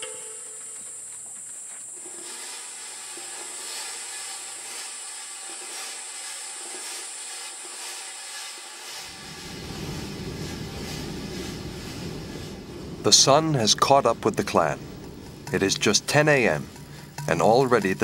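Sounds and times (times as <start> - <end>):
insects chirring: 0.0 - 9.2, 13.1 - 18.0.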